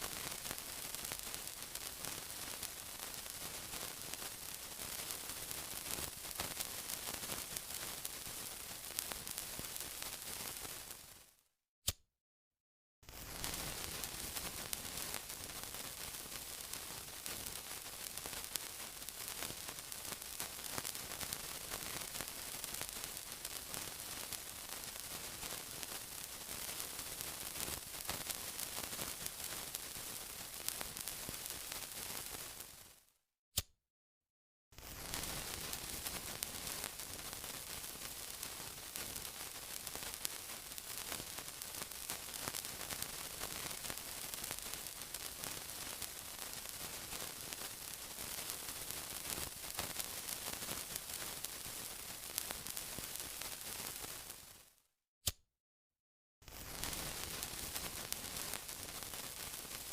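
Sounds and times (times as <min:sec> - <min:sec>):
sizzling with fine crackling: 0:00.0 - 0:11.3, 0:13.0 - 0:33.1, 0:34.8 - 0:54.8, 0:56.4 - 0:59.9
sharp click: 0:55.2 - 0:55.4.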